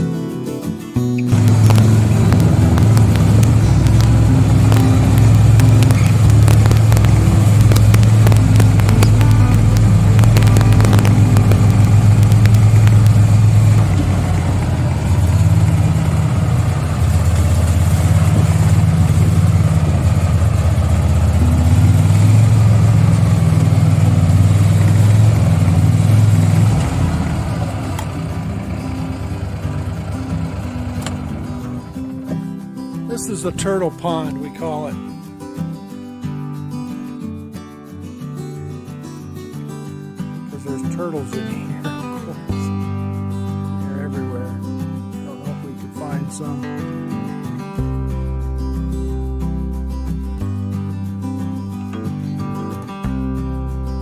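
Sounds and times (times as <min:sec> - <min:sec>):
vehicle engine under load: 0:01.3 - 0:32.5.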